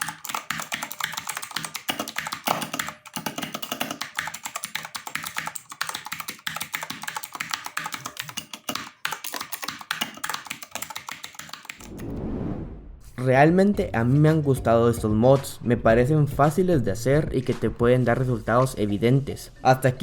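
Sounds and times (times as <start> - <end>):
mechanical keyboard key clacks: 0.0 - 11.9.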